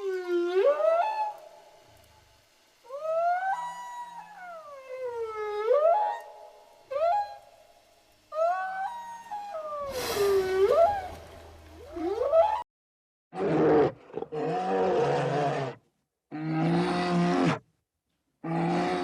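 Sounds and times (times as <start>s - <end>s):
whale moans and whistles: 0.0s - 1.4s, 2.9s - 6.3s, 6.9s - 7.4s, 8.3s - 12.6s
bear growls: 18.4s - 19.0s.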